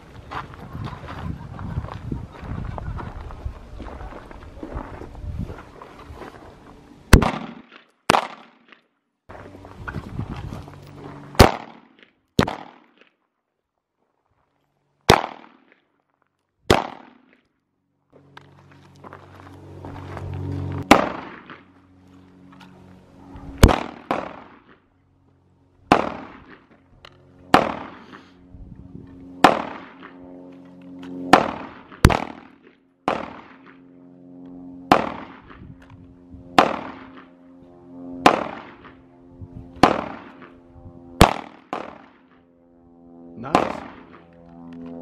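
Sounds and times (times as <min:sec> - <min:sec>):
pistol shots: 0:07.1 - 0:08.8, 0:11.4 - 0:13.0, 0:15.1 - 0:15.8, 0:16.7 - 0:17.4, 0:20.8 - 0:21.7, 0:23.6 - 0:24.8, 0:25.9 - 0:26.6, 0:27.5 - 0:28.2, 0:29.4 - 0:30.1, 0:31.3 - 0:33.8, 0:34.9 - 0:35.6, 0:36.6 - 0:37.3, 0:38.2 - 0:38.9, 0:39.8 - 0:40.5, 0:41.2 - 0:42.2, 0:43.5 - 0:44.2.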